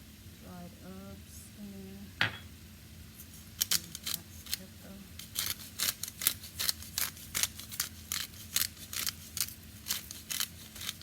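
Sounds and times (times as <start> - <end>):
utensil striking a pan: 2.2 - 2.5.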